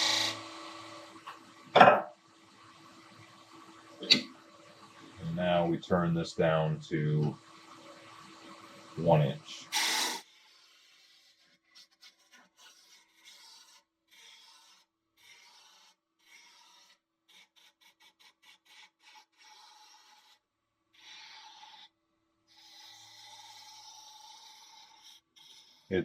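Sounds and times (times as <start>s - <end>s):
lathe tool scraping wood: 0.0s - 0.4s.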